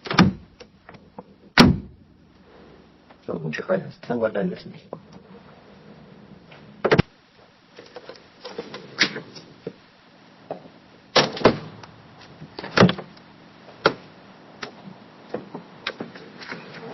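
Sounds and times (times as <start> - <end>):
knocks and clunks: 0.0 - 2.0, 6.4 - 7.1, 10.5 - 16.9
window opening and shutting: 0.0 - 2.8, 5.0 - 7.1, 7.8 - 9.8, 10.5 - 13.2, 13.8 - 16.9.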